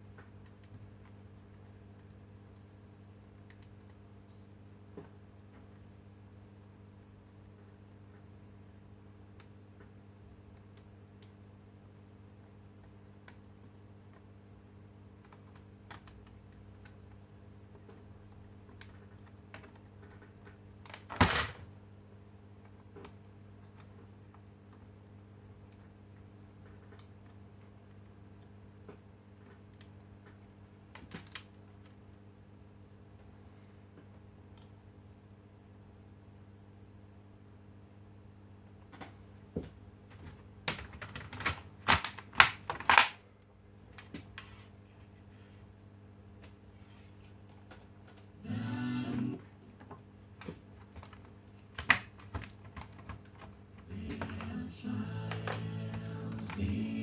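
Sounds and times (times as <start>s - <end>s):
electrical hum: 0.0s - 57.0s
laptop plastic parts clattering: 20.9s - 21.6s, 40.1s - 43.2s, 50.4s - 53.6s.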